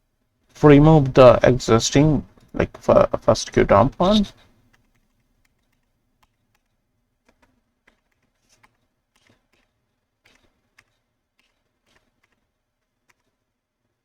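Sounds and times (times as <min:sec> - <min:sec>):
faint keyboard typing clicks: 0:02.3 - 0:13.6.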